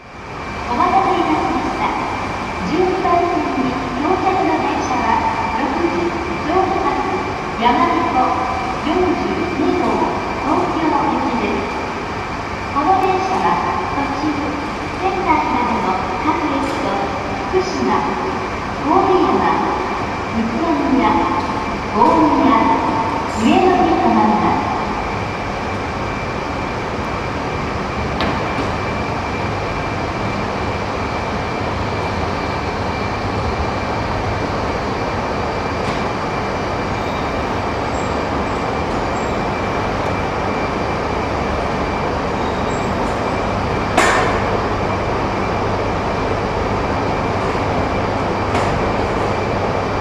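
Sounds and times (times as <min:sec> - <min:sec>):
train running rumble and hiss: 0:00.0 - 0:50.0
sharp knock: 0:44.0 - 0:44.5.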